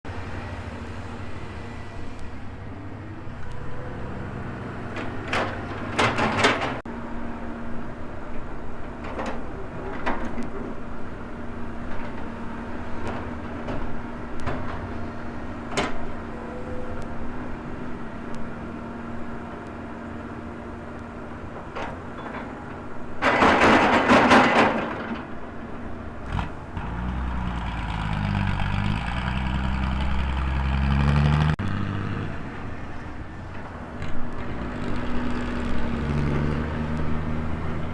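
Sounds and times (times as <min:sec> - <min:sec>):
excavator diesel engine running: 0:00.0 - 0:37.9
metallic clanks of excavator bucket: 0:05.0 - 0:06.8, 0:21.6 - 0:25.4.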